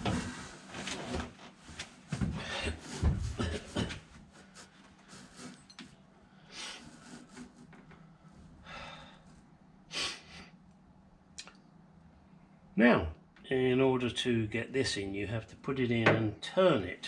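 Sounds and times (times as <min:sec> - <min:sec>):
person breathing and sniffing: 0:02.4 - 0:05.7, 0:06.4 - 0:07.7, 0:08.6 - 0:10.6.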